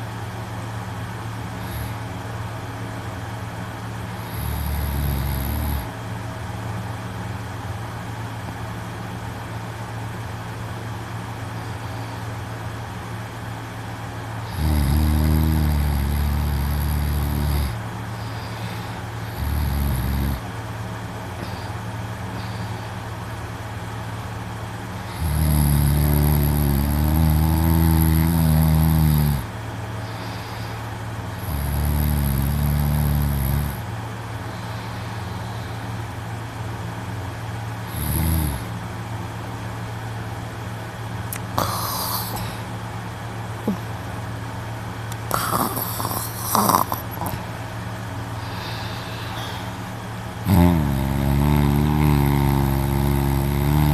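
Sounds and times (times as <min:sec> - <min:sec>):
low steady hum: 0:00.0 - 0:53.9
man snoring loudly: 0:01.6 - 0:02.0, 0:04.1 - 0:05.9, 0:14.4 - 0:20.5, 0:25.0 - 0:33.9, 0:37.8 - 0:38.7, 0:41.3 - 0:42.7, 0:45.1 - 0:47.4, 0:50.4 - 0:53.9.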